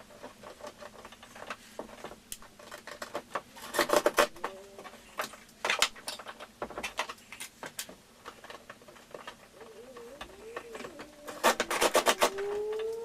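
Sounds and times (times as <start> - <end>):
clicks and rattles of parts handled: 0.0 - 13.0.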